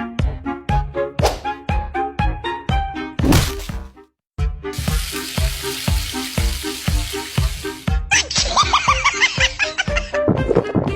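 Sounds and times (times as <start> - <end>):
loud sizzling hiss: 4.8 - 7.9.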